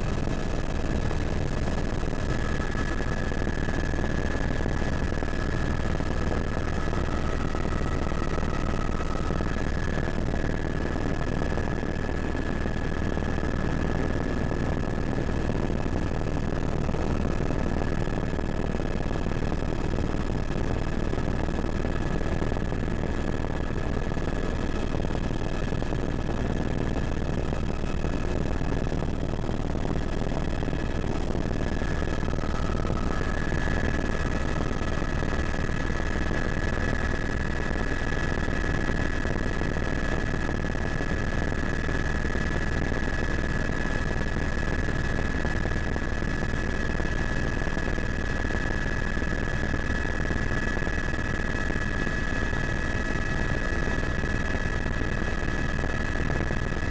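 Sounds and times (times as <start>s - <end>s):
helicopter cabin drone: 0.0s - 56.9s.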